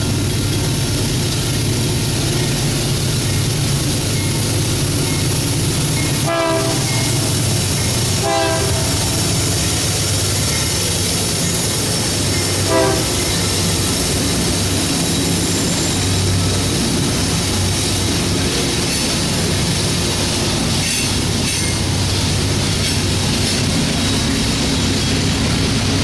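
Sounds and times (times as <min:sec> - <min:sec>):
train rumble and wheel clatter: 0:00.0 - 0:26.0
train horn blasts: 0:06.2 - 0:07.3, 0:08.2 - 0:09.2, 0:12.6 - 0:13.3.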